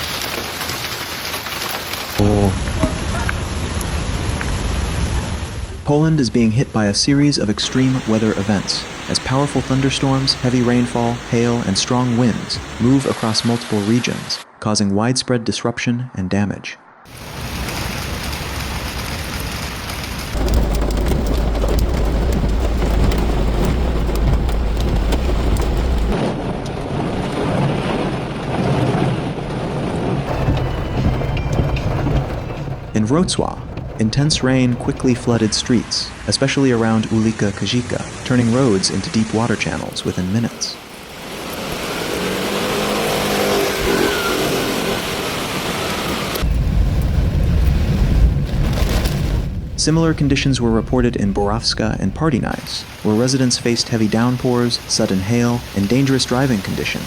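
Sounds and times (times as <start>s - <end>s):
heavy rain pouring: 0.0s - 14.4s, 17.1s - 57.0s
low rumbling noise: 2.2s - 13.0s, 17.1s - 44.2s, 44.8s - 57.0s
deep low rumble: 17.4s - 28.3s, 29.2s - 36.0s, 46.4s - 52.6s
car engine running: 20.3s - 26.2s, 30.3s - 35.6s.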